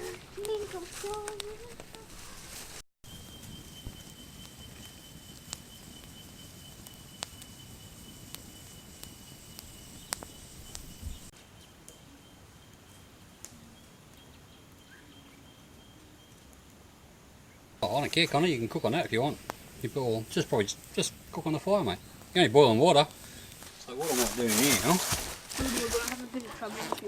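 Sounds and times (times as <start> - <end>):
low hiss: 0.0 - 26.7
high-pitched insect trill: 3.1 - 13.9, 17.9 - 26.4.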